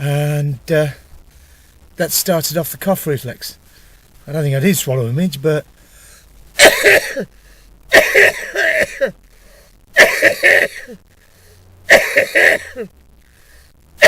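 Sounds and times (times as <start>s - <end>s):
man coughing: 6.6s - 7.3s, 7.9s - 9.2s, 10.0s - 11.0s, 11.9s - 12.9s.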